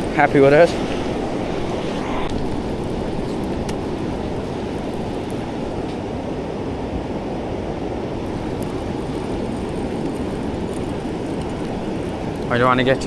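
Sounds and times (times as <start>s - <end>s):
surf breaking: 0.0s - 6.1s
wind on microphone: 0.0s - 13.0s.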